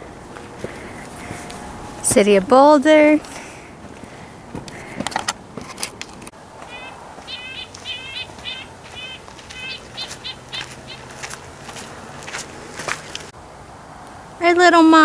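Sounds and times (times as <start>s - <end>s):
bird chirping: 6.6s - 11.3s.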